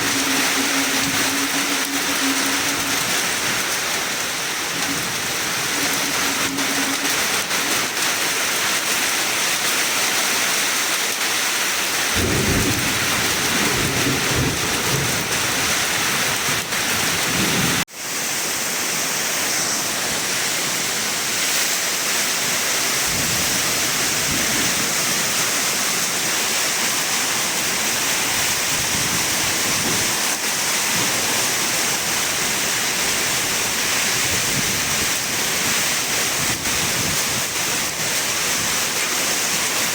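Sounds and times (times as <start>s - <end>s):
heavy rain: 0.0s - 39.9s
rolling thunder: 12.2s - 17.8s.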